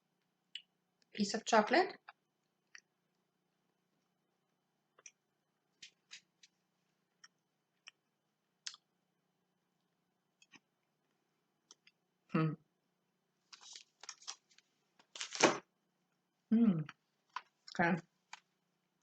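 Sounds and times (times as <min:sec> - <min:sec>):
faint clicks of chocolate eating: 0:00.1 - 0:01.1, 0:02.0 - 0:09.0, 0:09.8 - 0:12.0.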